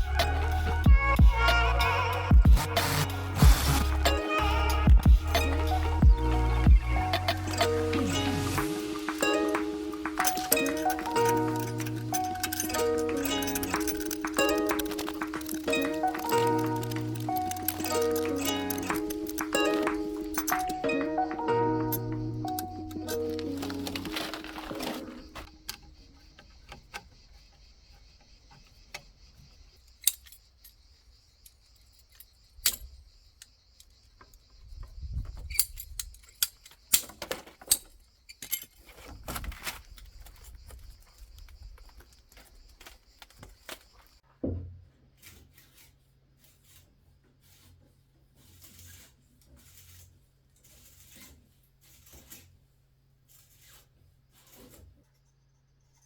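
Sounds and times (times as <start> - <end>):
small hard objects clinking: 0.0 - 26.8
steady high hiss: 1.5 - 28.0.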